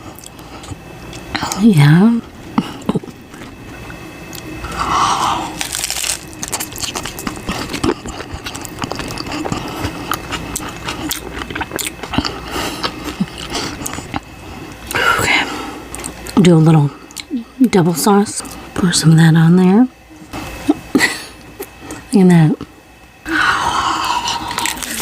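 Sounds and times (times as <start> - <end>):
chewing with crackling crunches: 0.0 - 1.6, 2.5 - 15.0, 15.9 - 16.4, 24.0 - 25.0
crunchy taco shell bite: 5.5 - 14.2, 24.2 - 25.0.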